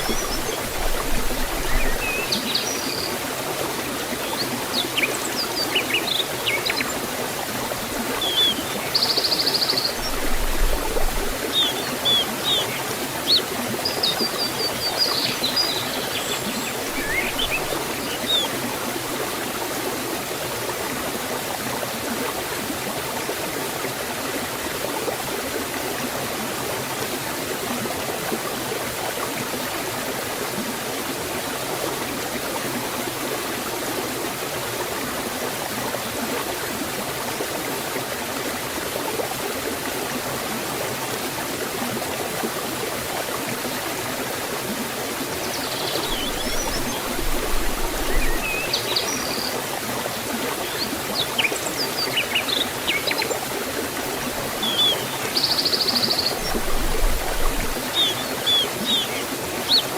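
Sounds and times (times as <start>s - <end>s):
stream and waterfall rushing: 0.0s - 59.9s
bird chirping: 54.6s - 56.7s, 57.9s - 59.9s.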